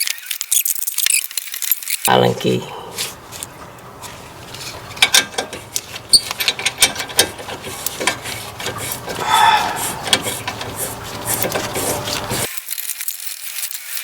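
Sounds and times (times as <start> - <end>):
rasping scrape: 3.0 - 12.5
hand tools clicking and clinking: 4.6 - 12.6.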